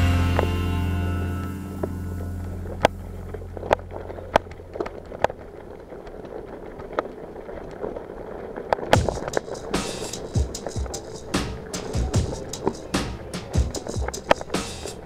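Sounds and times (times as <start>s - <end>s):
background music: 0.0s - 4.4s, 9.0s - 15.0s
bike rolling noise: 0.0s - 15.0s
sharp clicks and knocks: 8.7s - 15.0s.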